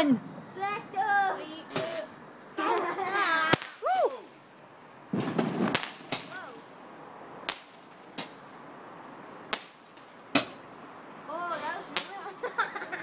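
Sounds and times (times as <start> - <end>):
fireworks bangs: 1.7 - 4.4, 5.1 - 6.8, 7.4 - 8.7, 9.4 - 10.7, 11.5 - 12.7.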